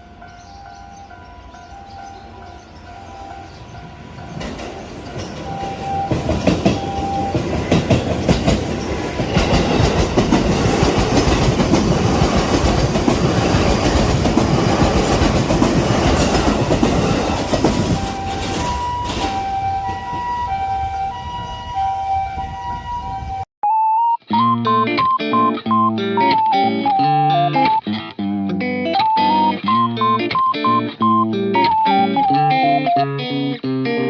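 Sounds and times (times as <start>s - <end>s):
level crossing warning bell: 0.0s - 7.7s, 17.3s - 23.4s, 24.3s - 27.8s, 29.0s - 33.1s
train wheels clacking over rail joints: 4.2s - 20.3s.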